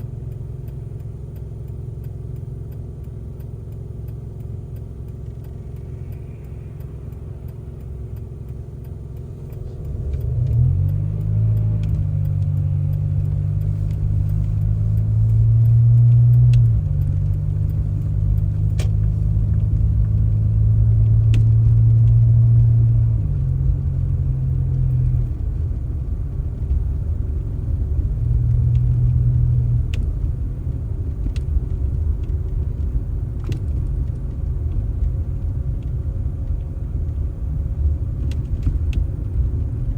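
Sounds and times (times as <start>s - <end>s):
large engine rumbling: 0.0s - 39.9s.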